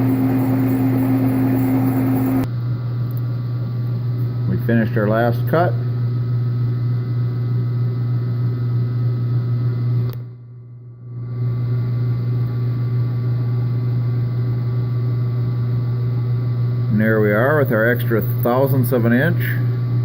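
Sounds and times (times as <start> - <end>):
metal lathe motor hum: 0.0 - 2.5.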